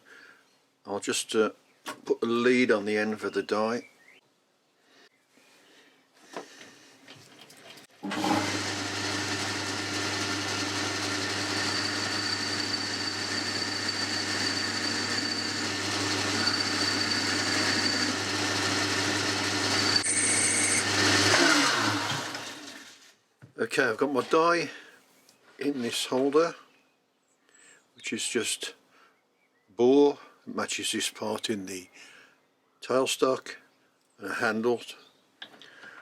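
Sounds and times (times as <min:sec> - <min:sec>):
lathe motor humming and whining: 0:08.0 - 0:22.8.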